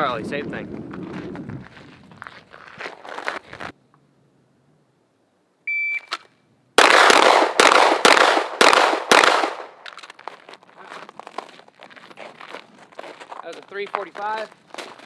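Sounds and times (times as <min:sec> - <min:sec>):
shot timer beep: 0:05.7 - 0:06.2
pistol shots echoing: 0:06.8 - 0:10.0.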